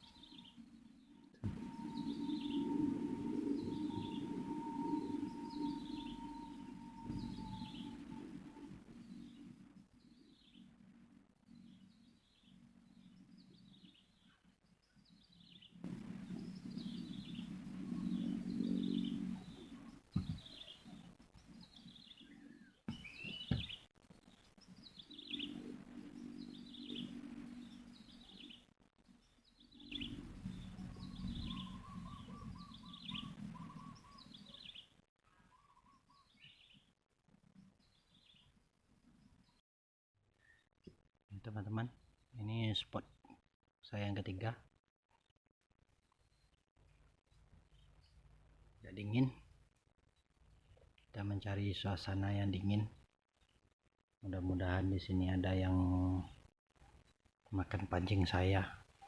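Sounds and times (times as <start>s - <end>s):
low hum: 0.0s - 13.8s, 15.7s - 23.8s, 29.2s - 34.2s
bird chirping: 0.0s - 28.6s, 29.2s - 36.9s
rapid bird trill: 1.4s - 9.4s, 22.9s - 23.8s, 29.8s - 34.9s
sharp knocks: 20.2s - 20.5s, 22.9s - 23.7s.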